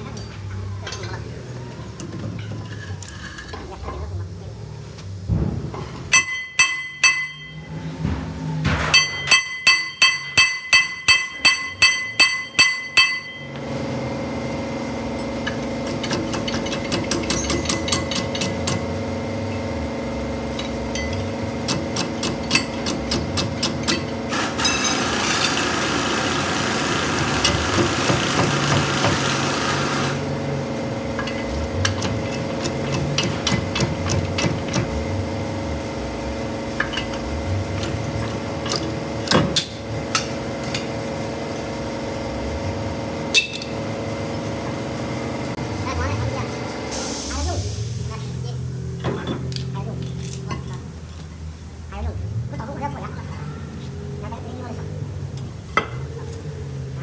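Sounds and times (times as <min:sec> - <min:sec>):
steady mechanical hum: 0:00.0 - 0:57.0
hammer striking metal: 0:06.1 - 0:13.6, 0:15.2 - 0:19.7, 0:20.5 - 0:25.5, 0:31.1 - 0:35.2.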